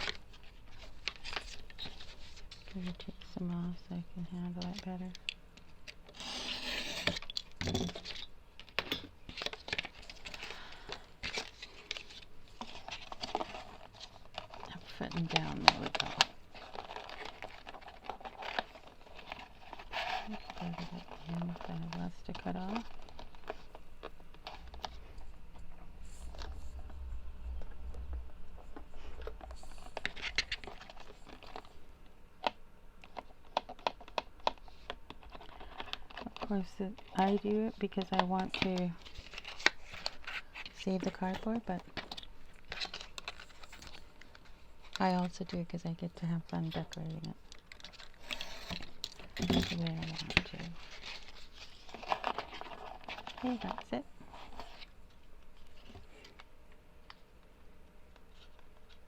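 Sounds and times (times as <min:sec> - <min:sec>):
crisp clicks and scrapes: 0:04.6 - 0:31.8, 0:32.4 - 0:45.8, 0:46.4 - 0:57.2
low rumble of handling: 0:19.4 - 0:32.1.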